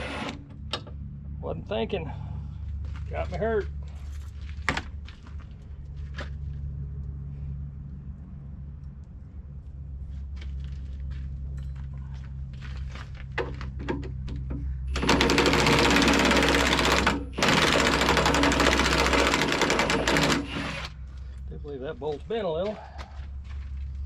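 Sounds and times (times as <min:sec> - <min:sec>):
impact wrench hammering bolt: 0:14.9 - 0:20.9.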